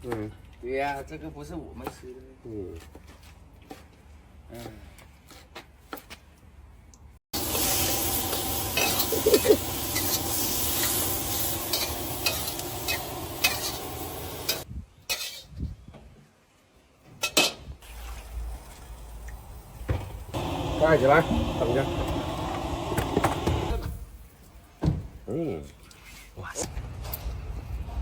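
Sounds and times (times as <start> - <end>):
food sizzling in a pan: 7.4 - 15.4, 17.8 - 23.8
metal utensil scraping a pan: 11.7 - 15.6.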